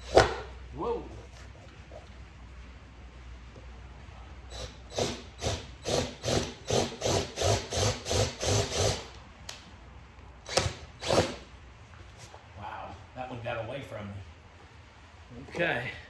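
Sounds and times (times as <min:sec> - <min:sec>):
power drill bursts: 0:04.5 - 0:09.1, 0:10.4 - 0:11.4.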